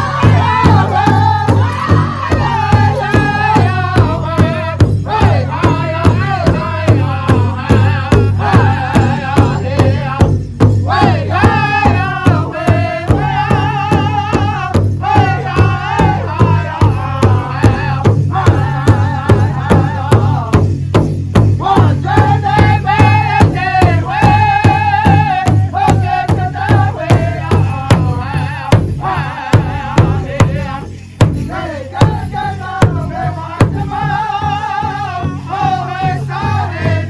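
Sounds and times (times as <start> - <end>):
singers' high wavering voices: 0.0 - 5.9
large drum beating: 0.0 - 37.0.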